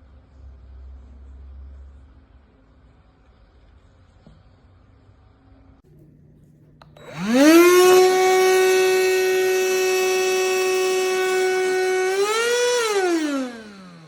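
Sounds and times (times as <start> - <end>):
handheld vacuum motor whine: 6.8 - 14.0.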